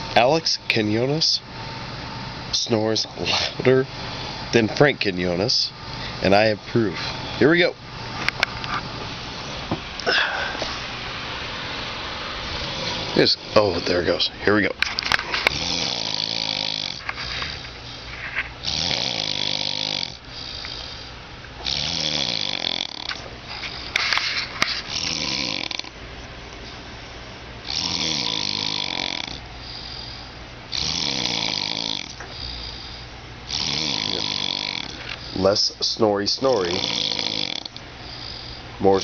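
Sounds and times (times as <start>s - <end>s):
man snoring: 12.6s - 14.1s, 15.4s - 17.6s, 18.6s - 20.9s, 21.6s - 23.2s, 24.9s - 26.0s, 27.6s - 35.4s, 36.6s - 38.6s.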